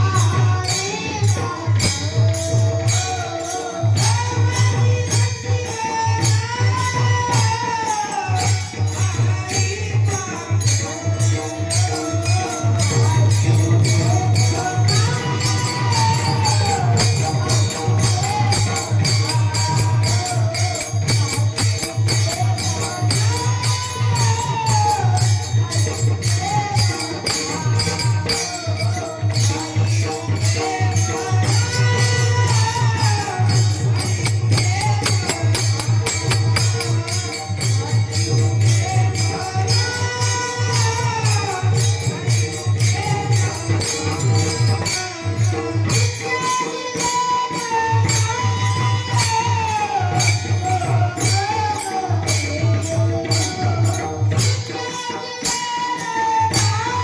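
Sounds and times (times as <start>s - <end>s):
person singing devotional song: 0.0s - 57.0s
small hand cymbals: 0.0s - 57.0s.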